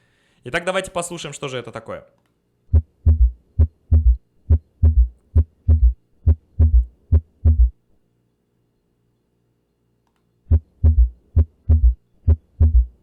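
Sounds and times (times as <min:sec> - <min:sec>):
galloping heartbeat thumps: 0:02.7 - 0:07.8, 0:10.5 - 0:13.0.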